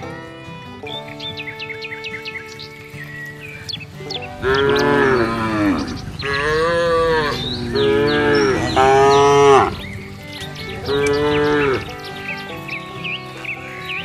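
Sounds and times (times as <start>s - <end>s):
cattle mooing: 4.4s - 12.0s.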